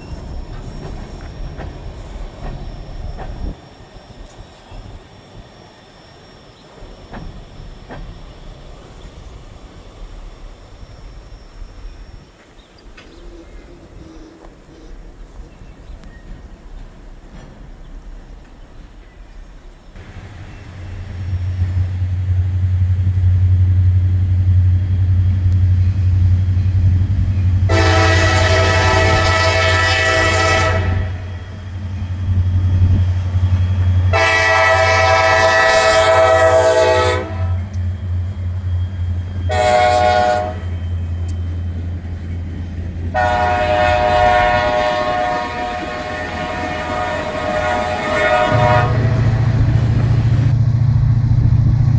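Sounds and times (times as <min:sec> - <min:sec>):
diesel locomotive engine rumbling: 0:00.0 - 0:51.9
train air horn blasts: 0:27.7 - 0:31.6, 0:34.0 - 0:37.8, 0:39.4 - 0:40.9, 0:43.1 - 0:50.5.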